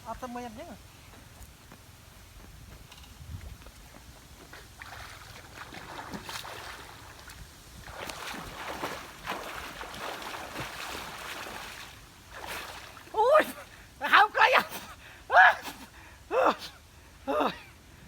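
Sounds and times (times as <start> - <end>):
water swishing and sloshing: 4.2 - 14.0.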